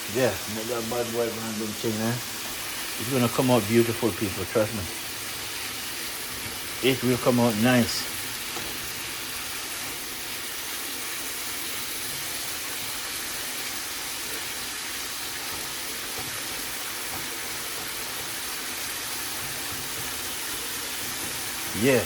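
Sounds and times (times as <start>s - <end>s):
chicken sizzling in a pot: 0.0s - 22.0s.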